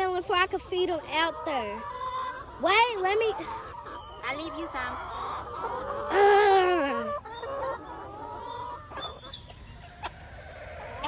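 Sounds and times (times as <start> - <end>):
chickens clucking: 0.0 - 11.0
chicken drawn-out call: 1.5 - 11.0.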